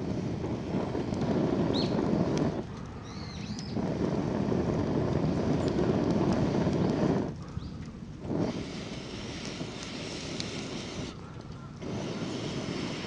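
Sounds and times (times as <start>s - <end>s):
wind buffeting microphone: 0.0s - 13.0s
bird chirps: 3.0s - 3.8s.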